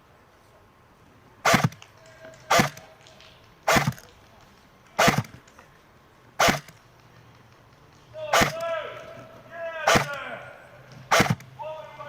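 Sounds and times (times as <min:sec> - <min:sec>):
airsoft rifle shots cracking: 0:01.4 - 0:03.0, 0:03.6 - 0:04.1, 0:05.0 - 0:05.4, 0:06.4 - 0:06.8, 0:08.3 - 0:09.0, 0:09.8 - 0:10.3, 0:11.1 - 0:11.5.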